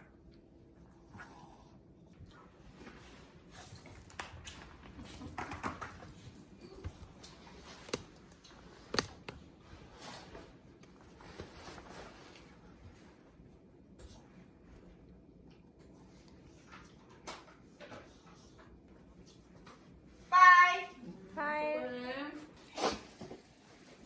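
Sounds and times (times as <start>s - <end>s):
rustling and handling noises: 2.6s - 15.0s.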